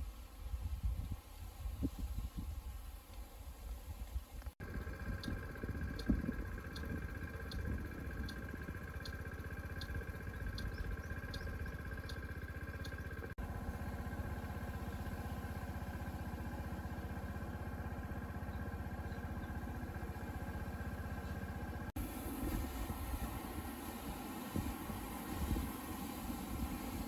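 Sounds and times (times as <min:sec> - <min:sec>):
motorcycle engine running: 0:04.4 - 0:27.0
light regular ticking: 0:04.6 - 0:13.4.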